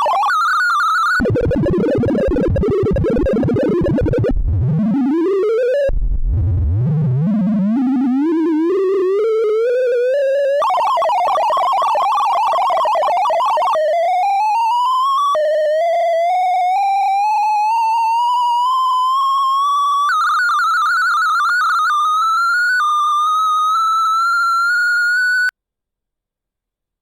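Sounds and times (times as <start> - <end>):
synthesised warbling beeps: 0.0 - 5.9, 10.6 - 14.4.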